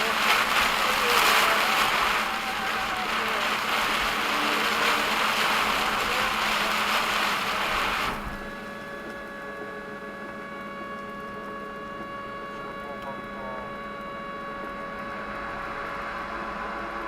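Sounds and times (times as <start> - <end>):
heavy rain on car roof: 0.0 - 8.7.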